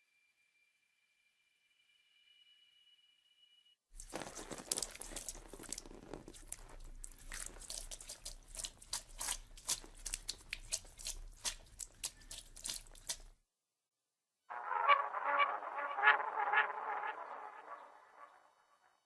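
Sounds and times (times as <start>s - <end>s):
crunching and tearing cracks: 4.0s - 13.3s.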